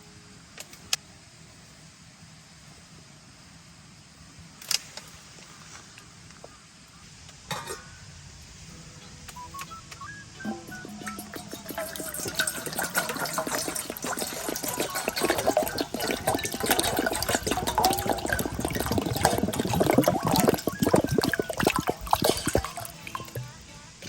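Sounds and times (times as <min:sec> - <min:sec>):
liquid crackling and bubbling: 0:10.4 - 0:24.0.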